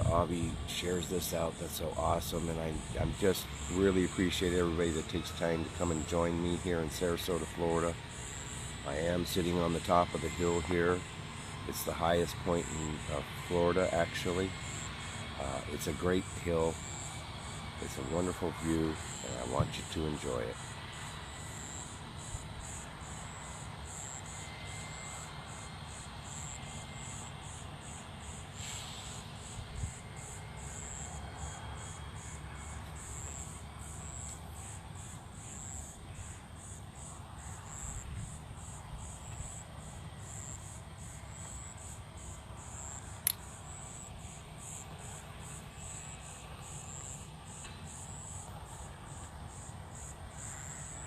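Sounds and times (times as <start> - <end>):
crickets chirping: 0.0 - 51.0
sharp click: 43.2 - 43.5.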